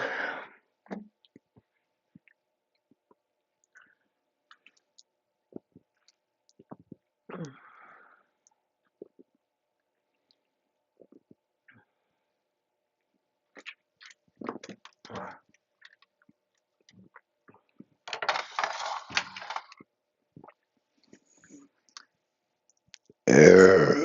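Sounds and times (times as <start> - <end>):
loud low burp: 23.3 - 24.0.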